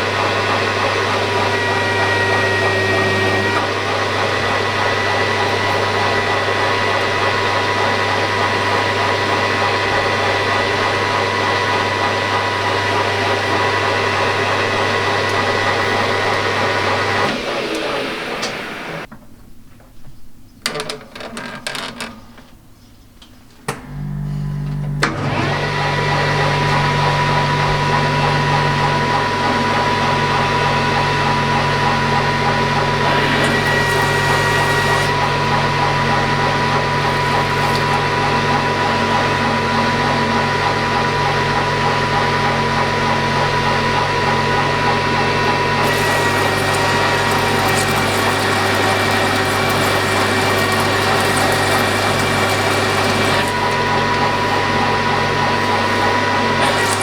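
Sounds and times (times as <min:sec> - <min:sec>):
lathe grinding with high whine: 0:00.0 - 0:19.1, 0:25.2 - 0:57.0
electric motor humming: 0:25.2 - 0:40.6, 0:44.1 - 0:57.0.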